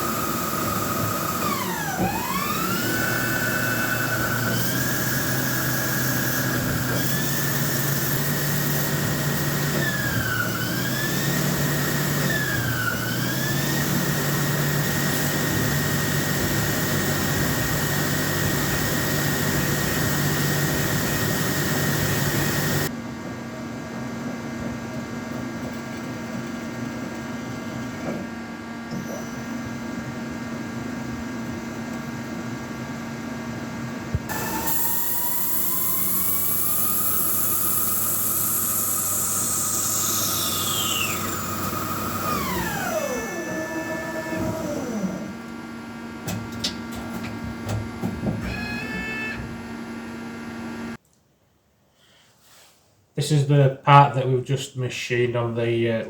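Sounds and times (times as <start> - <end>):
lathe spindle whine: 0.0 - 22.9, 34.2 - 51.0
machine noise: 46.1 - 50.3.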